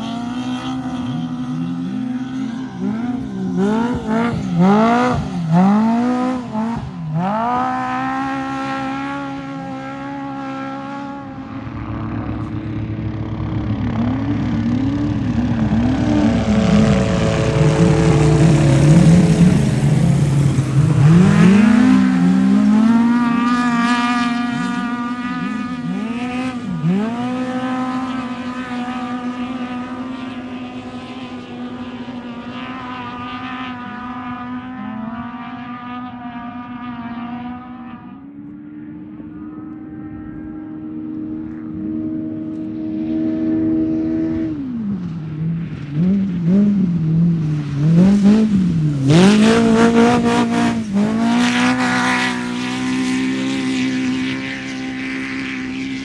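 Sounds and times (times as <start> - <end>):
race vehicle engine revving: 0.0 - 56.0.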